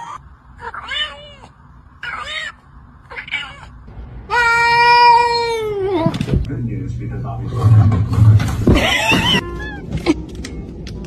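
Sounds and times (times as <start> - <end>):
cat meowing: 0.0 - 6.3, 8.7 - 9.9.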